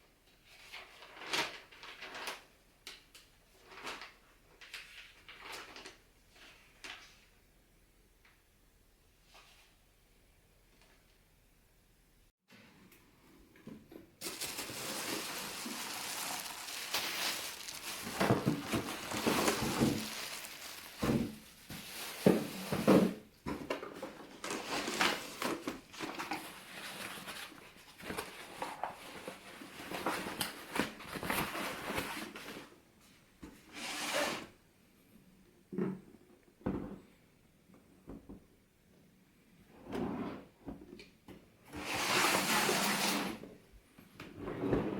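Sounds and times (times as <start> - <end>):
rustling and scraping of handling: 14.2 - 34.3.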